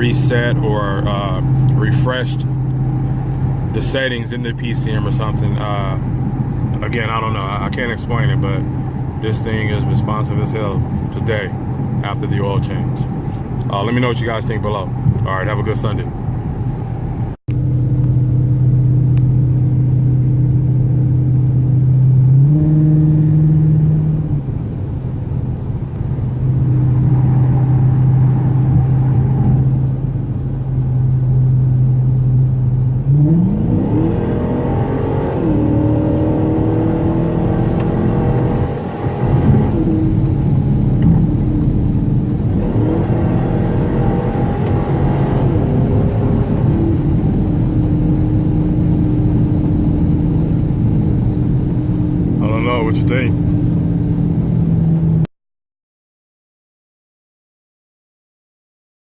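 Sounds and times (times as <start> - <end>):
car engine accelerating through gears: 16.2 - 24.6, 26.2 - 55.2.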